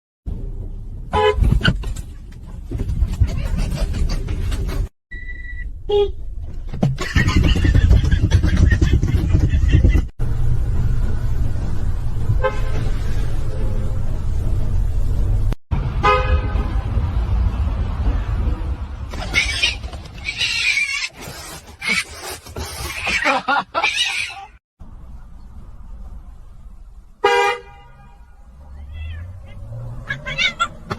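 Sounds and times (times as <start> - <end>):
vehicle rumble: 0.3 - 24.2, 24.8 - 30.9
car horn honking: 1.1 - 1.5, 16.0 - 16.7, 27.2 - 28.3
high beep: 5.1 - 5.7.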